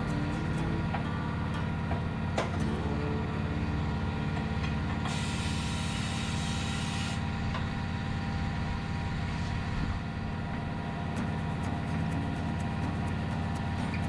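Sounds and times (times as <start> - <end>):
machinery humming: 0.0 - 9.5, 10.2 - 14.0
compressed air hissing: 5.0 - 7.2, 11.2 - 14.0.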